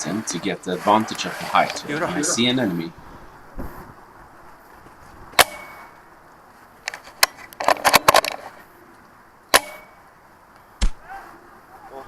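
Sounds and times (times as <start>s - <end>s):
airsoft rifle firing: 5.4s - 6.0s, 9.5s - 10.0s.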